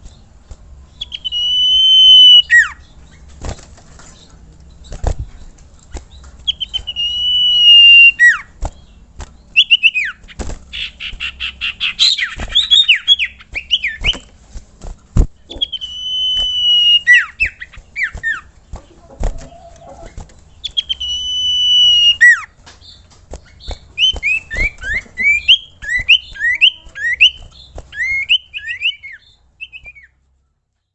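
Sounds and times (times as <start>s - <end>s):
bird whistling: 1.0s - 2.8s, 6.5s - 8.5s, 9.5s - 14.3s, 15.5s - 18.5s, 20.6s - 22.5s, 23.6s - 30.2s.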